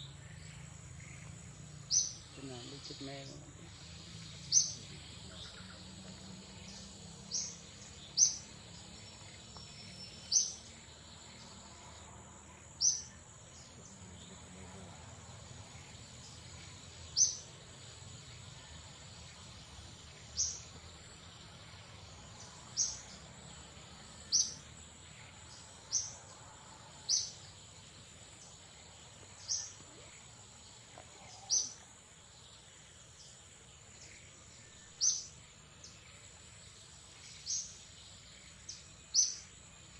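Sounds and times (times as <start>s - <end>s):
high-pitched insect drone: 0.0s - 12.0s.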